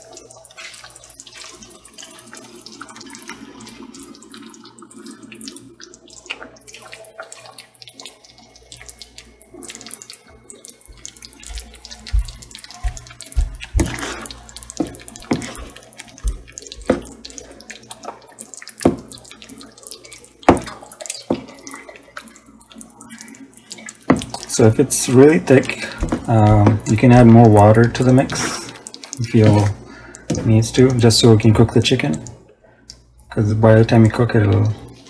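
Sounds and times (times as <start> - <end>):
sauce hissing while cooking: 10.8 - 17.8, 23.2 - 31.0.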